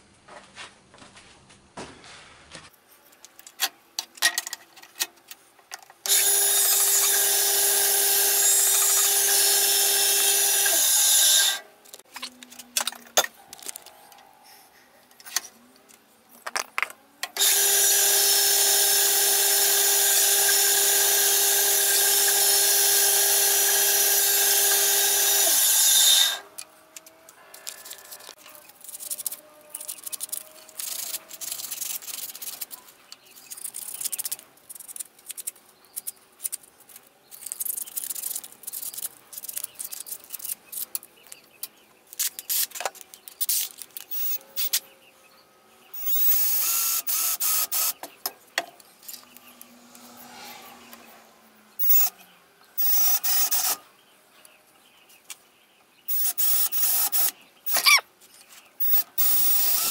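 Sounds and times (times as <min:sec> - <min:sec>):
woodworking power tool running: 0:06.1 - 0:11.7, 0:17.4 - 0:26.6, 0:58.9 - 0:59.9
handling clicks and scrapes: 0:11.8 - 0:17.4, 0:26.3 - 0:45.0, 0:47.9 - 0:51.1.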